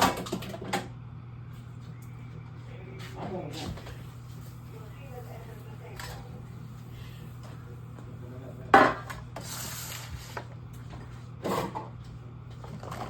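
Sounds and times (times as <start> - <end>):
steady low hum: 0.0 - 13.0
dish clattering down: 8.7 - 9.2.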